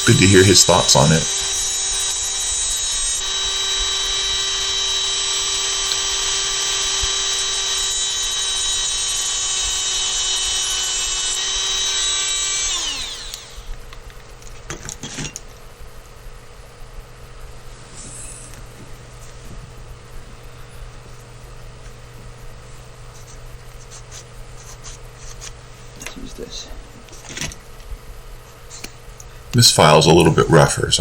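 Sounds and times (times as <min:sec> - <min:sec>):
small power tool motor: 0:00.0 - 0:14.0.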